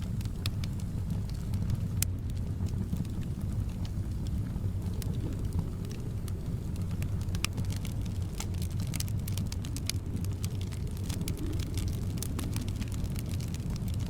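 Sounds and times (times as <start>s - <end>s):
soft wind rumble: 0.0s - 14.0s
wood fire crackling and popping: 0.0s - 14.0s.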